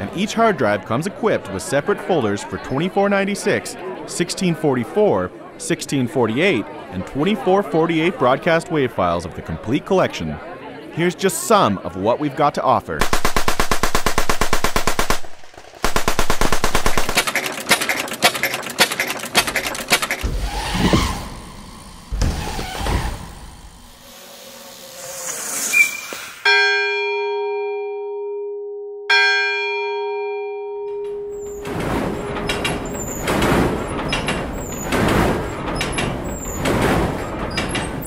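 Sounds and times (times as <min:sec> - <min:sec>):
rapid automatic gunfire: 0:13.0 - 0:20.3
bell struck and ringing: 0:26.4 - 0:31.6.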